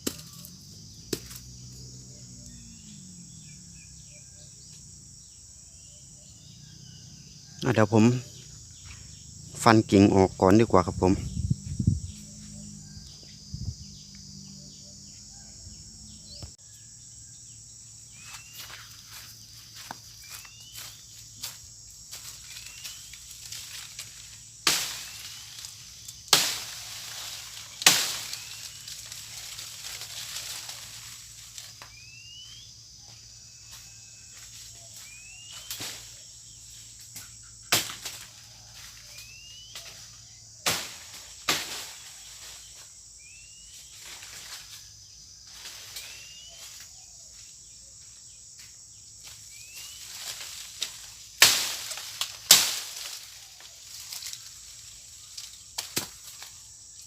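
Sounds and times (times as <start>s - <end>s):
blade chopping into branch: 0.0s - 1.5s, 23.5s - 29.2s, 37.2s - 38.3s, 40.6s - 42.0s, 50.8s - 53.2s, 55.4s - 56.5s
high insect drone: 0.0s - 57.0s.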